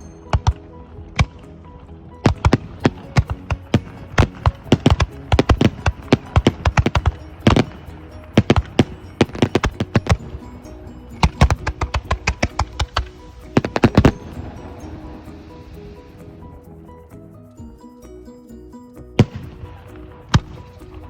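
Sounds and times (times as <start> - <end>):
music playing: 0.0 - 21.0
fireworks bangs: 2.3 - 16.0.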